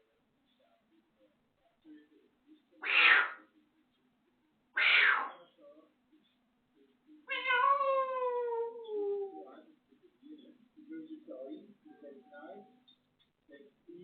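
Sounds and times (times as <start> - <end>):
parrot imitating cat meow: 2.8 - 3.4, 4.8 - 5.4, 7.3 - 9.4.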